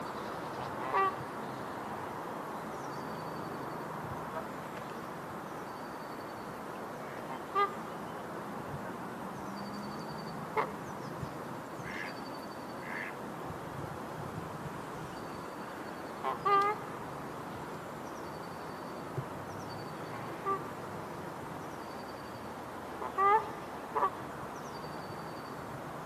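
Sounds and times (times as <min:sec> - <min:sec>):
background hiss: 0:00.0 - 0:26.0
goose honking: 0:23.0 - 0:24.2.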